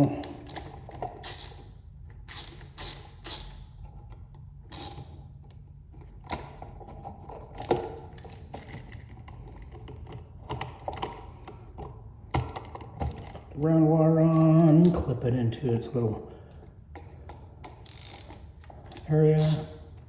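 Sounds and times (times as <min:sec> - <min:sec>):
low steady hum: 0:00.0 - 0:20.0
screwdriver clicks and scrapes: 0:17.3 - 0:19.9.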